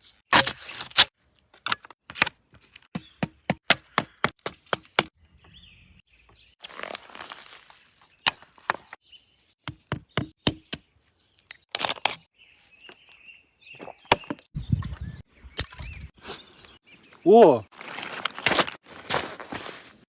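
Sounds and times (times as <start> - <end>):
sharp knocks and cracks: 1.6 - 5.2
rustling: 6.6 - 9.0.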